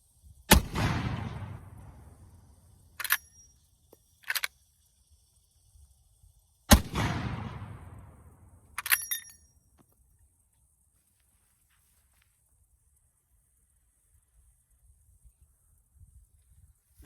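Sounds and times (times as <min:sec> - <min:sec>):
shotgun blast echoing: 0:00.5 - 0:02.3, 0:06.7 - 0:08.3
metallic clacks of lever action: 0:08.8 - 0:09.4.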